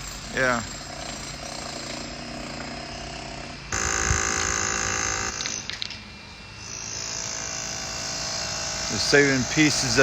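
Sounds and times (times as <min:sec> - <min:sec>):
chainsaw motor whining: 0:00.4 - 0:05.7.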